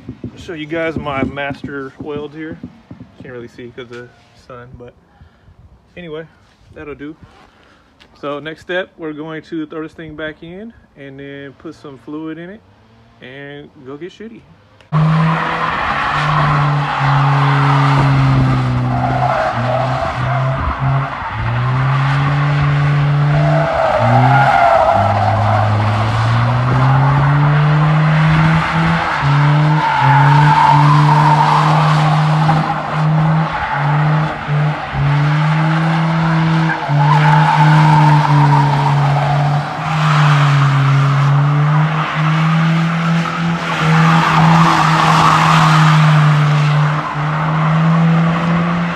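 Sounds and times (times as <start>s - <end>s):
tires squealing on pavement: 0.0s - 4.4s, 14.9s - 48.9s
engine revving high: 14.9s - 48.9s.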